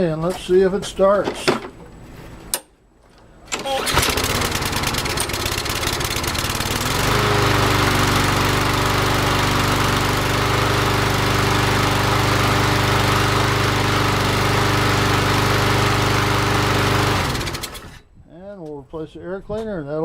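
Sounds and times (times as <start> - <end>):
lawn mower engine running: 3.4 - 18.0.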